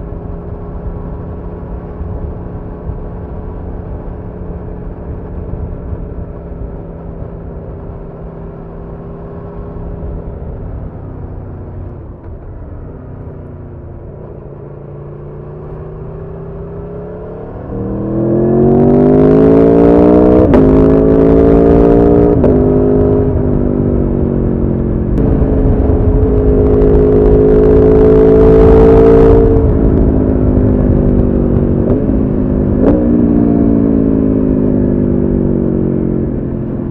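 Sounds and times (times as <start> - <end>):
motorcycle engine revving: 13.2 - 36.9.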